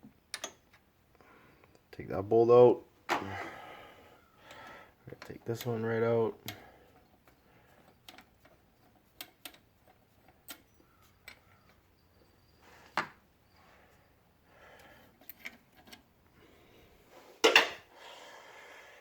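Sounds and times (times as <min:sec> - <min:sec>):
metal clicks of hand tools: 0:00.3 - 0:00.7, 0:09.2 - 0:11.7.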